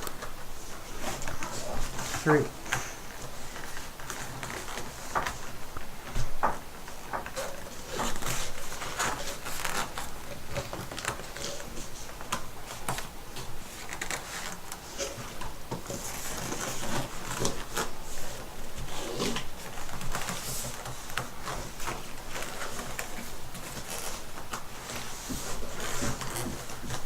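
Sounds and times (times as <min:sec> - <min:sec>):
cardboard box rustling and scraping: 0:13.7 - 0:27.0.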